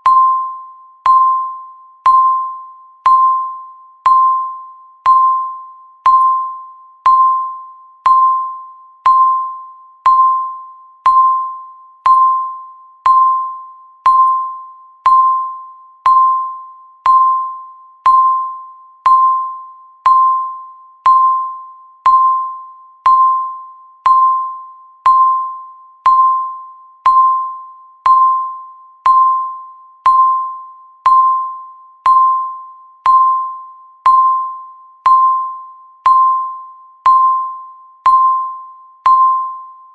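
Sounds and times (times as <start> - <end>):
timer ticking bell-like dings: 0.0 - 39.9.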